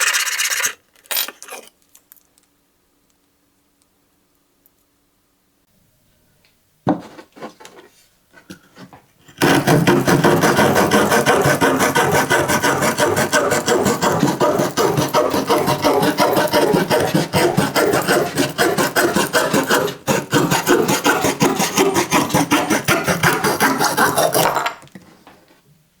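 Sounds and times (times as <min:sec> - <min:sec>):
saw blade cutting wood: 0:00.0 - 0:01.7, 0:09.4 - 0:24.6.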